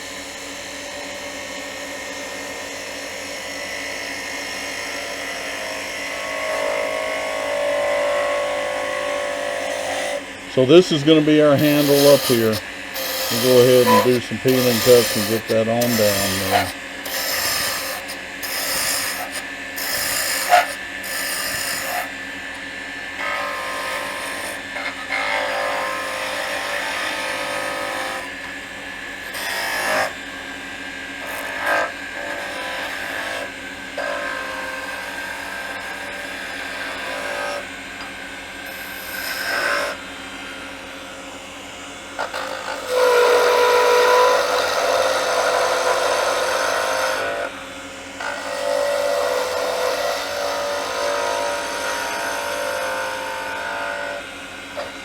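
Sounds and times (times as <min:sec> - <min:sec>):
wood lathe hum: 0:00.0 - 0:55.0
turning tool scraping wood: 0:09.6 - 0:22.6, 0:23.2 - 0:30.2, 0:31.2 - 0:40.0, 0:42.2 - 0:47.6
steady whining tone: 0:10.2 - 0:19.4.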